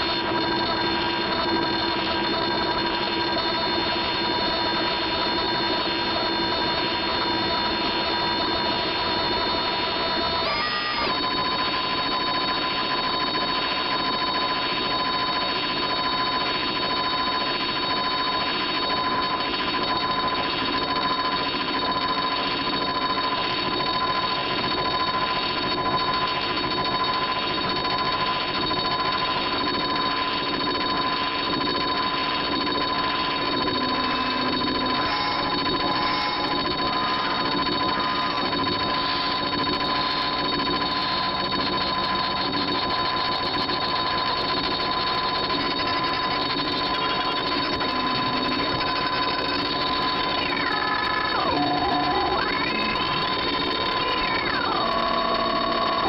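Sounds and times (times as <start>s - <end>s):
electronic drone with piercing tones: 0.0s - 56.0s
dense glitchy buzzing: 26.2s - 56.0s.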